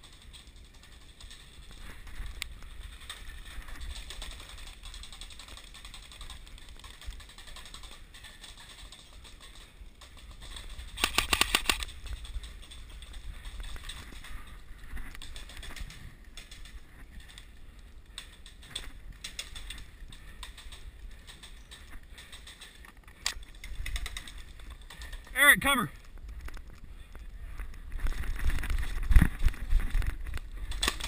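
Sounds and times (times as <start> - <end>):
airsoft gun full-auto burst: 11.0 - 11.9
rustling and handling noise: 26.0 - 31.0.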